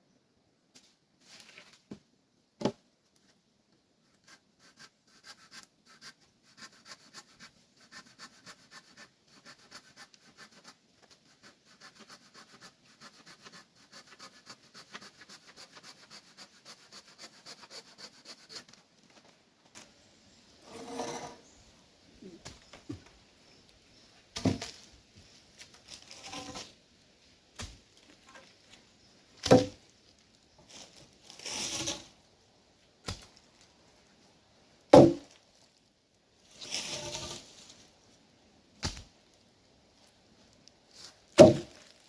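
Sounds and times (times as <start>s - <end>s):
rustle: 0.0s - 42.0s
rasping saw strokes on wood: 4.2s - 18.8s
sharp knock: 35.0s - 35.2s, 41.4s - 41.7s.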